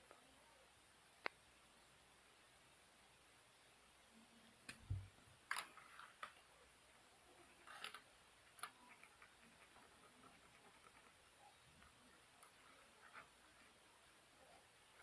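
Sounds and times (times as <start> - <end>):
soft low thump: 4.8 - 5.1.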